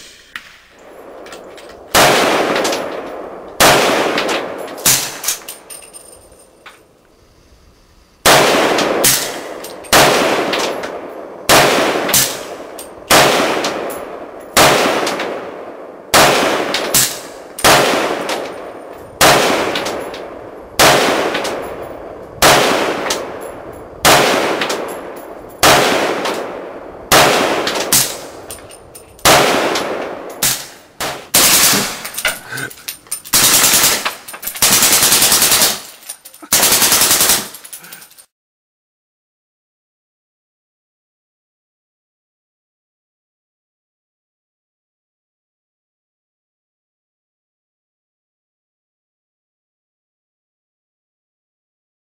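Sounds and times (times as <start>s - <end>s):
suppressed rifle shots: 0.4s - 5.5s, 8.2s - 32.0s
full-automatic gunfire bursts: 1.9s - 5.4s, 8.2s - 18.5s, 19.2s - 21.6s, 22.4s - 23.4s, 24.0s - 28.4s, 29.2s - 32.0s, 33.3s - 35.9s, 36.5s - 37.6s.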